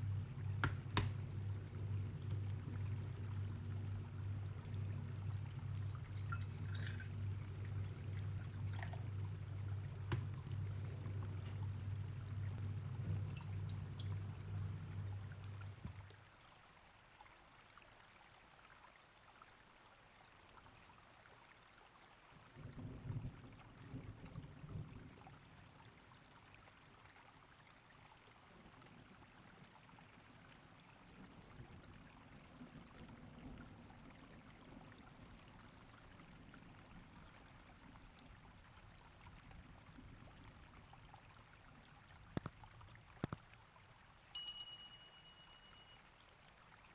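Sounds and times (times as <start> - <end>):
soft low bumps: 0.0 - 16.1.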